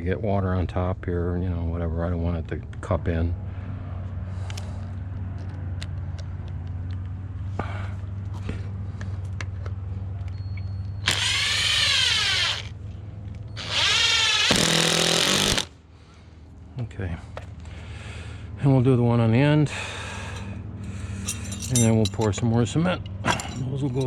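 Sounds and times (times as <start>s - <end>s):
steady low hum: 0.0s - 24.0s
power drill whining: 11.0s - 12.7s, 13.6s - 15.7s.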